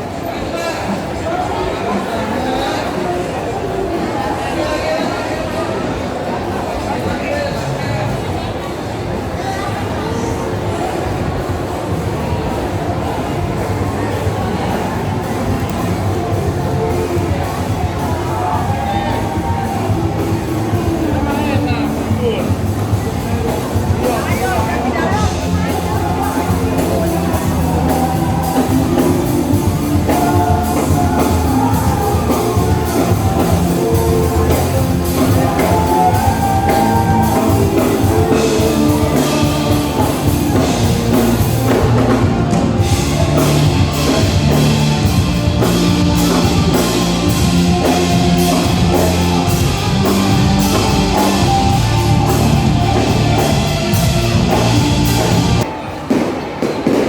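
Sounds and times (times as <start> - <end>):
drum kit: 11.9 - 57.0
loud rock music: 15.0 - 55.7
person singing: 25.2 - 42.1.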